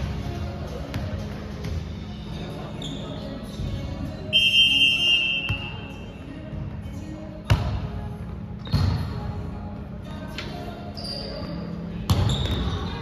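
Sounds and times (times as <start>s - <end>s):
referee's whistle: 4.3s - 5.8s.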